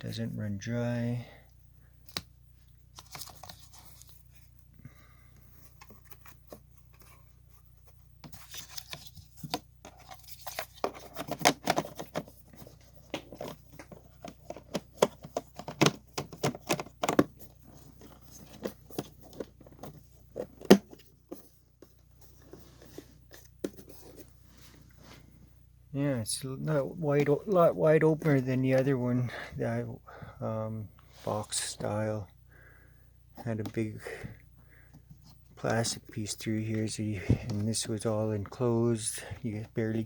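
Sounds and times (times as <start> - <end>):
hands handling plastic parts: 2.9 - 4.7, 5.4 - 25.2.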